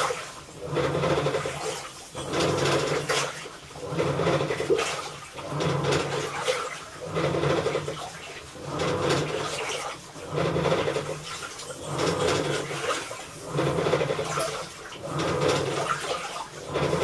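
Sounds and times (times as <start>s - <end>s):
washing machine agitating: 0.0s - 17.0s
water sloshing: 0.0s - 17.0s
grinding creak: 11.8s - 16.0s.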